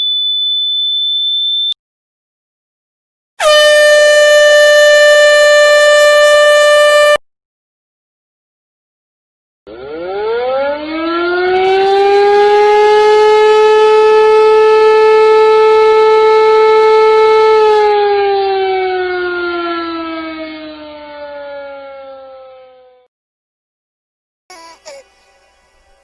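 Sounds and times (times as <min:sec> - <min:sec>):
siren wailing: 0:03.4 - 0:07.2, 0:09.7 - 0:23.1.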